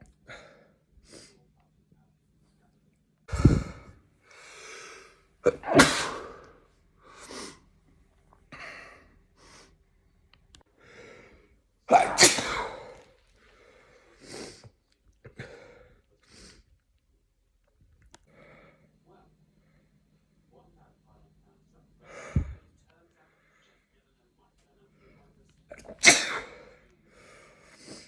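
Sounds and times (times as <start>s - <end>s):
person breathing: 3.3s - 5.3s, 6.2s - 7.6s, 10.8s - 11.6s, 22.0s - 22.7s
person sneezing: 5.4s - 7.6s, 11.9s - 13.1s, 25.7s - 26.8s.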